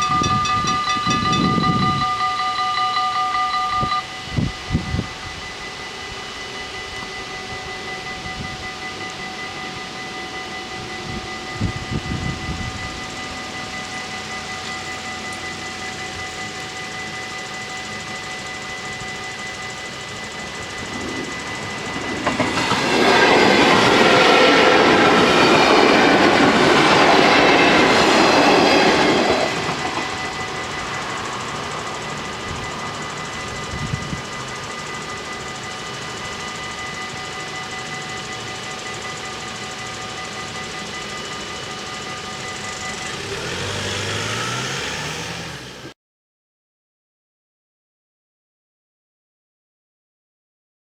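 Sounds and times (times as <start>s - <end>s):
train rushing past: 0.0s - 8.4s, 18.1s - 37.9s, 41.9s - 45.9s
level crossing bells ringing: 0.0s - 45.8s.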